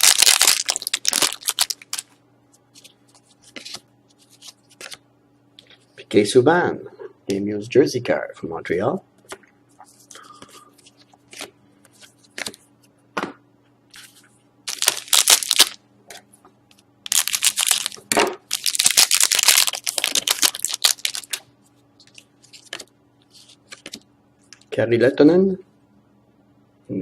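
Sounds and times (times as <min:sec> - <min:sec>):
plastic wrapper crinkling: 0:00.0 - 0:05.0, 0:14.7 - 0:15.8, 0:17.0 - 0:24.0
faint electrical hum: 0:00.0 - 0:27.0.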